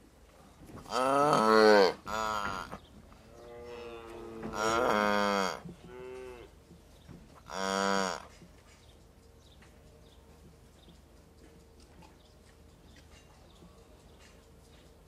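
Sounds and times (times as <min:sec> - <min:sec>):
calf mooing: 0:00.9 - 0:06.6, 0:07.5 - 0:08.3.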